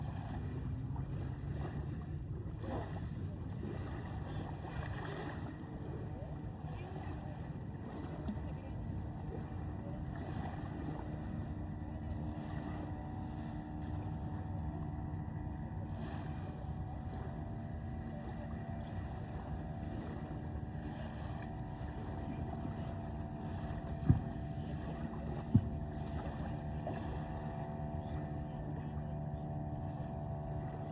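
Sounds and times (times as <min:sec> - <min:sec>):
motorboat engine drone: 0:00.0 - 0:30.9
wind on microphone: 0:12.9 - 0:30.9.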